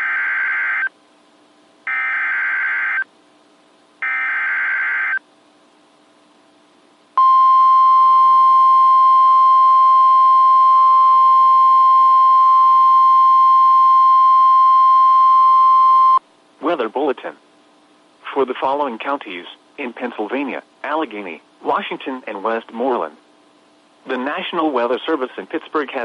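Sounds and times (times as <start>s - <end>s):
steady alarm tone: 1.9s - 3.0s, 4.0s - 5.2s.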